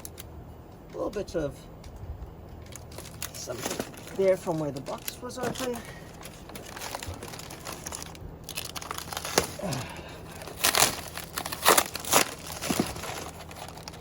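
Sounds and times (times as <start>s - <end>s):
cardboard tearing and crumpling: 2.8s - 14.0s.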